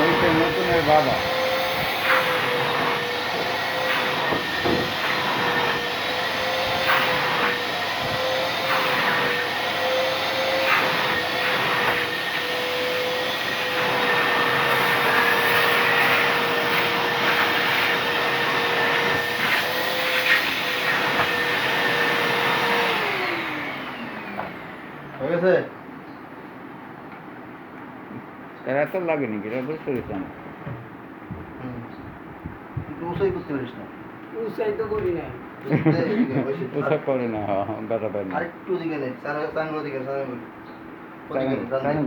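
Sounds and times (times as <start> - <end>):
nozzle knocking and scraping: 0.0 - 5.7, 30.0 - 33.7
vacuum cleaner running: 0.0 - 25.4.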